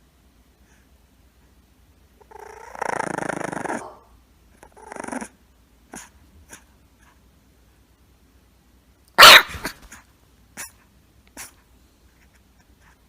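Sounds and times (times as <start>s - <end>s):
pet growling: 2.2s - 6.6s.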